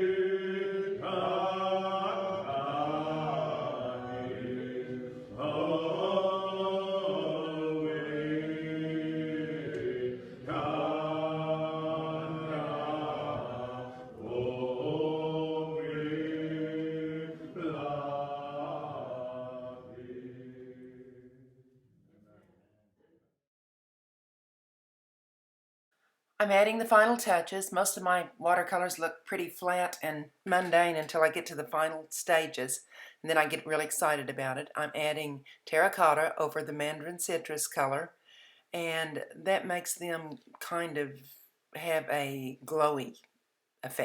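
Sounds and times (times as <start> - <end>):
congregation singing a hymn: 0.0 - 21.4.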